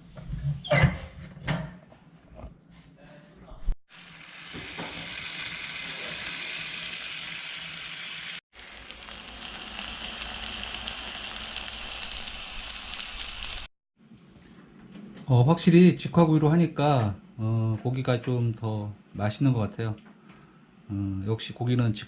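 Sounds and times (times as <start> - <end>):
pork sizzling in a frying pan: 3.9 - 13.7.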